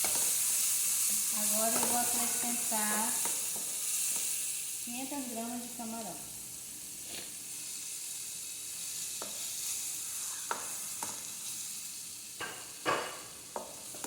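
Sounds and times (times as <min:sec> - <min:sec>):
food sizzling in a pan: 0:00.0 - 0:14.0
spoon knocking against pan: 0:01.7 - 0:02.0, 0:12.4 - 0:13.8.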